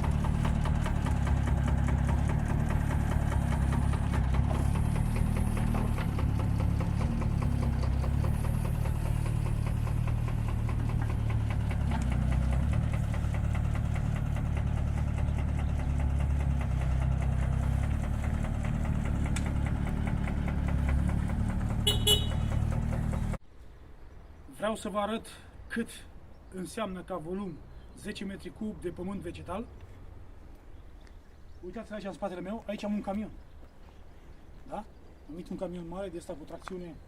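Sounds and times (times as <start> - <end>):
diesel engine running: 0.0 - 23.4.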